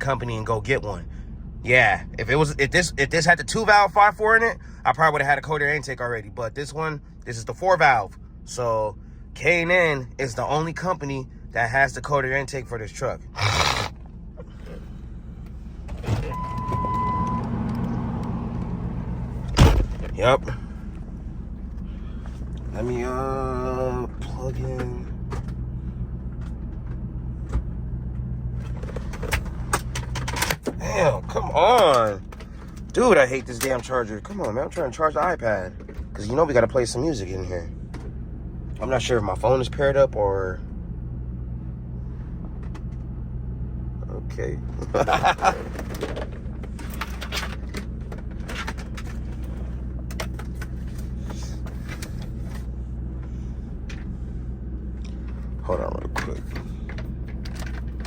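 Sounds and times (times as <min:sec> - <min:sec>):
car engine running: 0:00.0 - 0:58.0
charger cable clicks and rattles: 0:24.2 - 0:36.4, 0:42.4 - 0:43.2, 0:44.6 - 0:58.0
handling clicks and rustles: 0:45.2 - 0:58.0.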